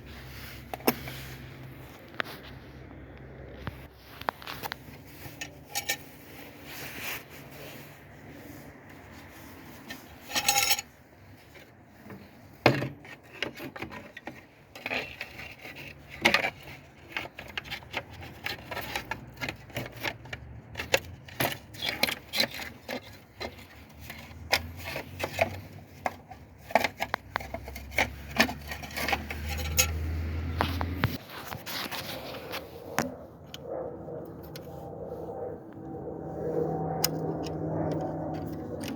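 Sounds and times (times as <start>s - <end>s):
metal hand tools clinking: 10.3s - 10.9s.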